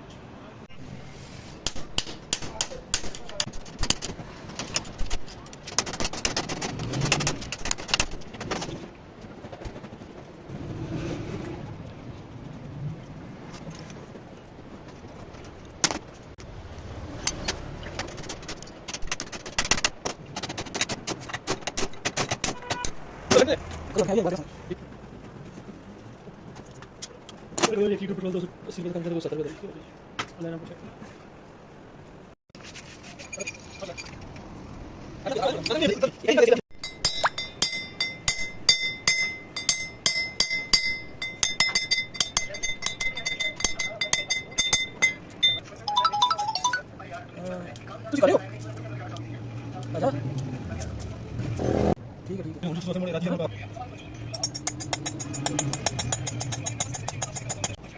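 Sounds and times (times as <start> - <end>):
metallic clinks and knocks: 36.8 - 46.8.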